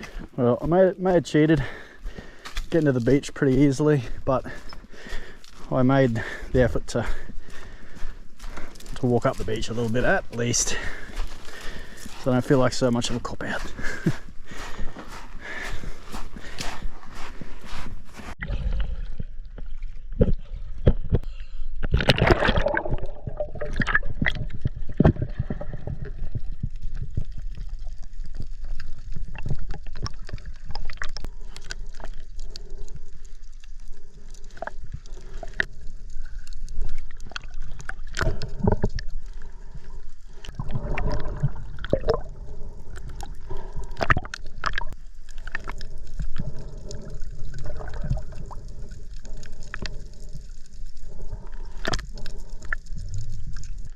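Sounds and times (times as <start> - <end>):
water sloshing and gurgling: 1.6 - 53.9
knocks and splashes: 21.8 - 26.4.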